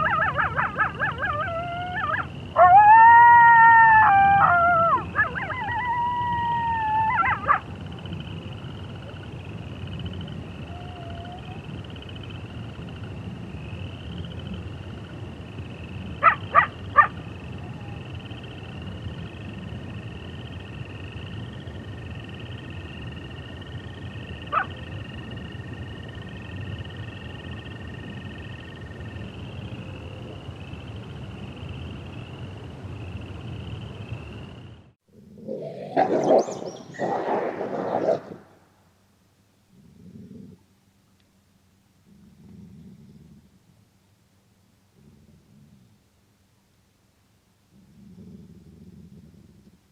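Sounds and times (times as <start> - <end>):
wolf howl: 0.0 - 7.6, 10.7 - 11.6
wolf yips: 0.0 - 7.6, 16.2 - 18.0, 24.5 - 24.7, 35.5 - 38.5.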